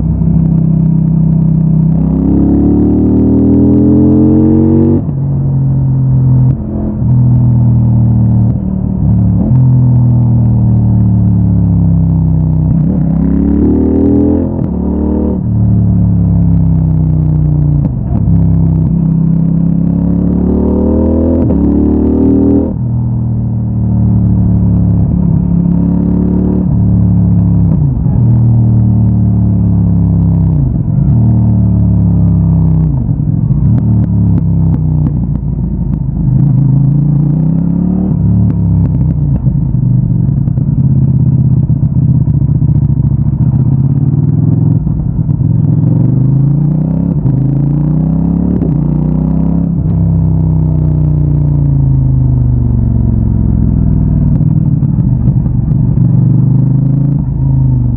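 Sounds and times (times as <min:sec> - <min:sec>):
motorcycle engine accelerating: 0:00.0 - 0:57.9.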